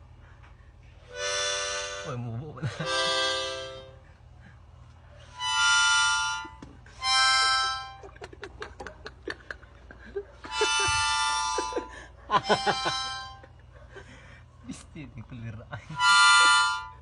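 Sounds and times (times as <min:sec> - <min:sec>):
harmonica chords: 0:01.0 - 0:04.2, 0:05.3 - 0:08.3, 0:10.4 - 0:13.7, 0:15.8 - 0:17.0.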